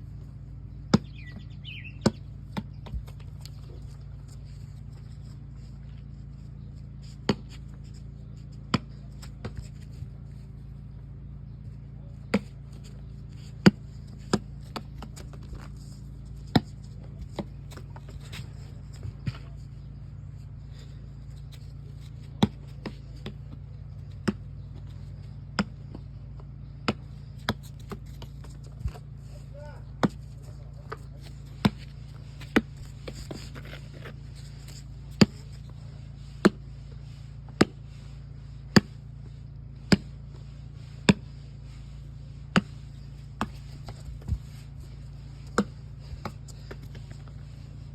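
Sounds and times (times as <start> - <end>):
steady low hum: 0.0 - 47.9
ball thudding on hard surface: 30.9 - 33.5.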